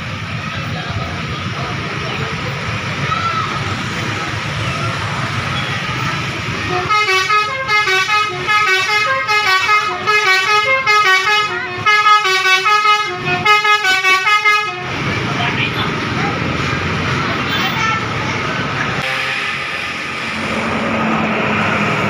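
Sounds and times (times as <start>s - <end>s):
low traffic rumble: 0.0s - 22.0s
multi-tone bus air horn tune: 6.6s - 15.1s, 19.0s - 20.8s.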